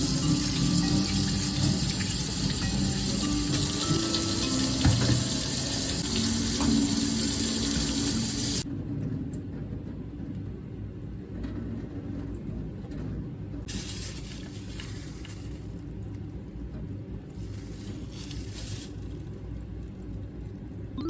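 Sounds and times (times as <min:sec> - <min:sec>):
tap running into a sink: 0:00.5 - 0:08.6.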